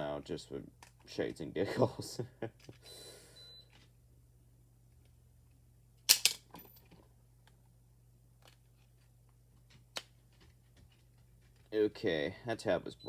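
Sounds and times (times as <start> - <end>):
sharp plastic snaps: 6.1 - 6.4, 9.9 - 10.2.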